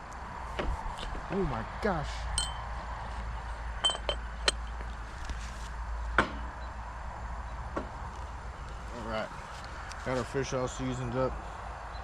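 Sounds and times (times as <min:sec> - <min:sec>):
jar taps and clinks: 0:02.4 - 0:02.7, 0:03.8 - 0:04.9.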